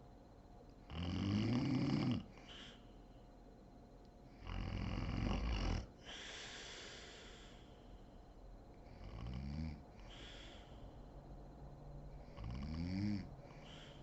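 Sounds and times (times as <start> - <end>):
woman snoring: 0.9 - 2.3, 4.4 - 7.4, 8.9 - 10.5, 12.4 - 14.0
breathy exhale: 2.3 - 3.0, 6.0 - 8.4, 9.9 - 11.2, 13.4 - 14.0.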